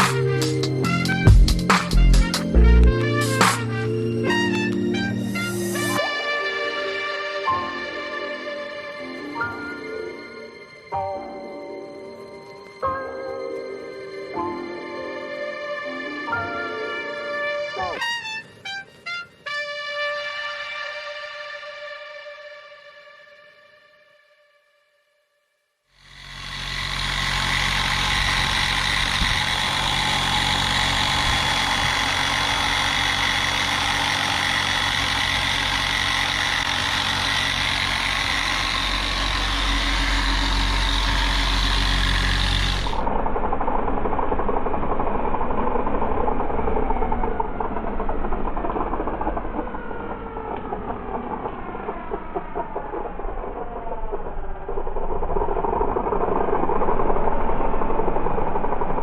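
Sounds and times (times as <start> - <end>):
polisher running on car paint: 26.0 - 59.0.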